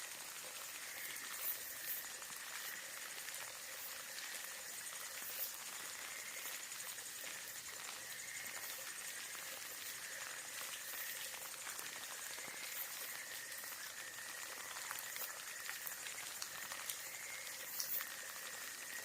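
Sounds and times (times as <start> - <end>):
rain falling: 0.0 - 19.0
raindrops ticking: 0.0 - 19.0.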